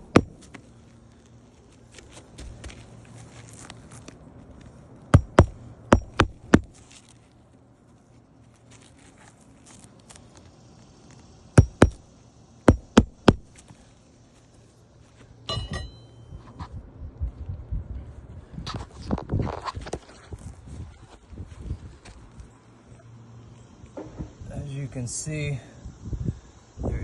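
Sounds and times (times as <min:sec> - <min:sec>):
hammer striking nails: 0:00.0 - 0:00.4, 0:05.2 - 0:06.7, 0:11.6 - 0:12.0, 0:12.7 - 0:13.5.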